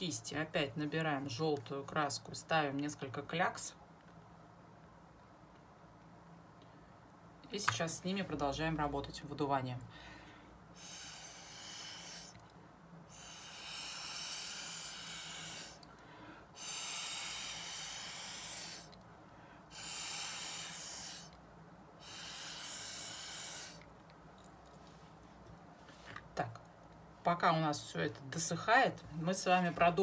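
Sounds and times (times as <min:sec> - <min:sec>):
hissing puffs of breath: 0:09.9 - 0:12.4, 0:13.1 - 0:21.4, 0:22.0 - 0:23.9.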